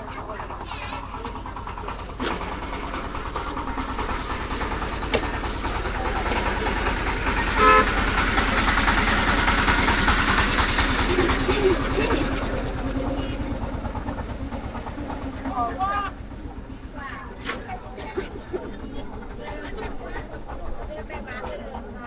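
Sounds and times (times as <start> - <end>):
vehicle engine running: 0.0 - 22.0
short horn beep: 7.6 - 8.0.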